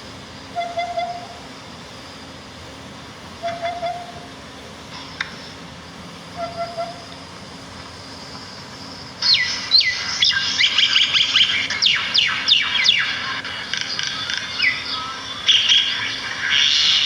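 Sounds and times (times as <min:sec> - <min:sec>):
songbirds rapid descending chirps: 0:05.8 - 0:17.0.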